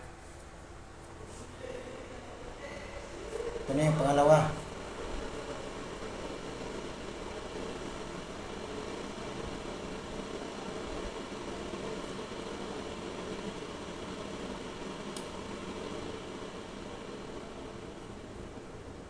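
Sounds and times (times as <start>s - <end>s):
coffee maker humming and hissing: 0.0s - 19.0s.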